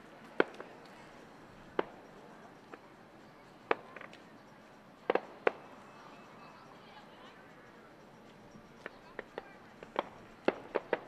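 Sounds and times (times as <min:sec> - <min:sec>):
fireworks banging: 0:00.2 - 0:00.9, 0:01.7 - 0:02.9, 0:03.6 - 0:04.2, 0:05.0 - 0:05.8, 0:08.8 - 0:11.0.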